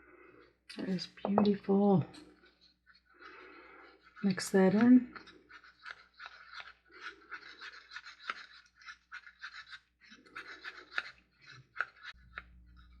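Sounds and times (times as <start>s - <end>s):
stick scraping around a cup: 0.8s - 13.0s.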